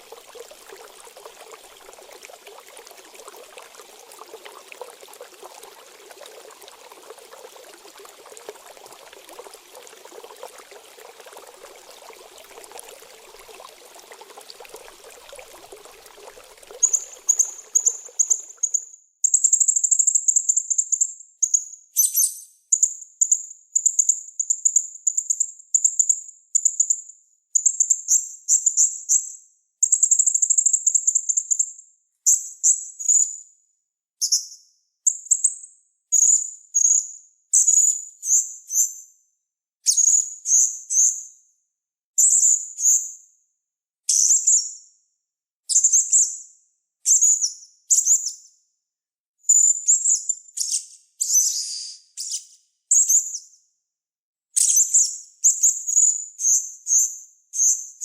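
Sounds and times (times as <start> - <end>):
running water trickling: 0.0 - 18.8.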